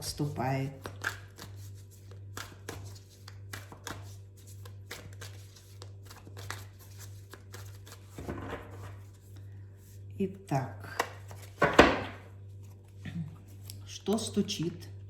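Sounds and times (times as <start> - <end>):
low electrical hum: 0.0 - 15.0
cards being shuffled: 0.8 - 9.5, 11.0 - 13.8.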